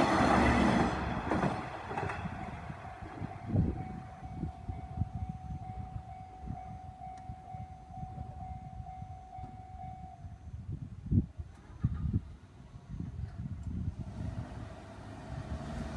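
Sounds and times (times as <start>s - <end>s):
level crossing warning bell: 0.4s - 10.4s.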